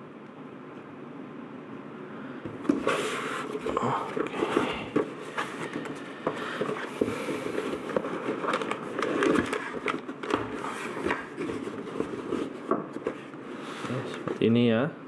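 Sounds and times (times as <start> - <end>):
cardboard box rustling and scraping: 2.6 - 14.4.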